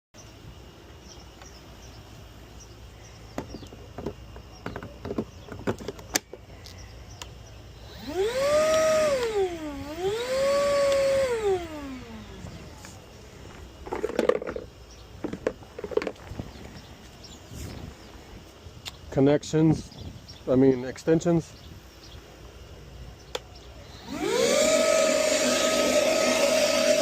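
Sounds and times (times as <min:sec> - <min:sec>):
vacuum motor whine: 0:07.4 - 0:18.1, 0:23.3 - 0:27.0.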